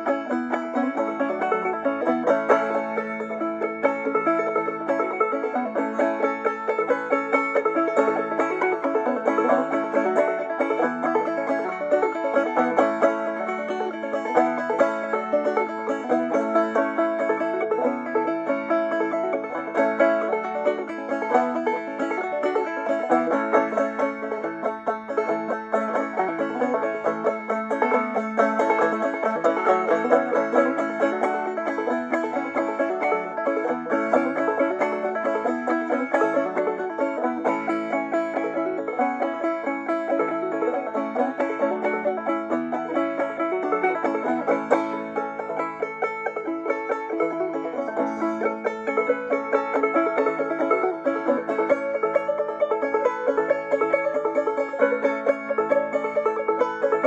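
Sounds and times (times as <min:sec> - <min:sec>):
banjo playing old-time tune: 0:00.0 - 0:57.0.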